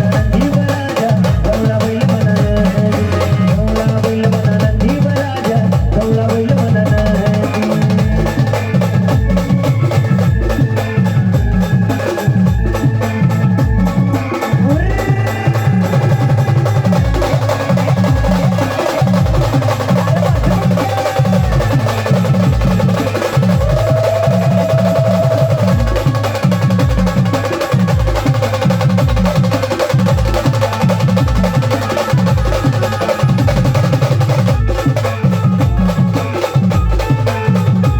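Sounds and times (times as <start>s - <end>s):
deep drum beat: 0.0s - 37.9s
brass melody: 2.8s - 3.8s
snare drumming: 12.0s - 37.9s.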